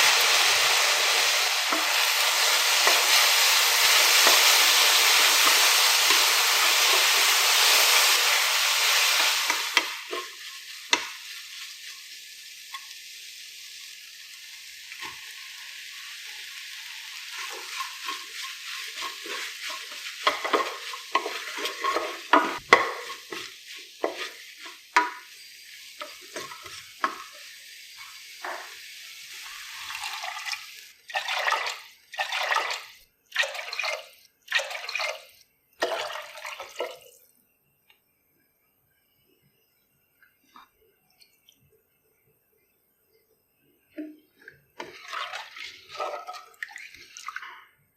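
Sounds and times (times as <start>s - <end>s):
spoon stirring and scraping pan: 0.0s - 13.0s, 14.9s - 30.5s, 44.0s - 47.6s
food sizzling in a frying pan: 0.0s - 37.2s, 44.2s - 47.1s.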